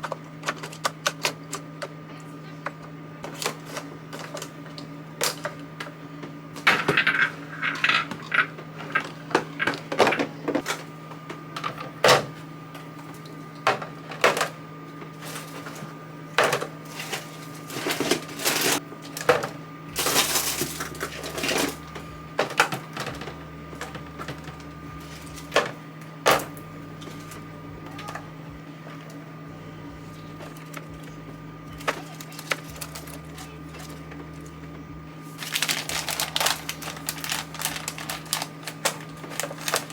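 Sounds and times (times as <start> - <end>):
steady low hum: 0.0 - 39.9
containers clicking and clattering: 6.6 - 10.8, 31.8 - 34.0, 35.4 - 39.9.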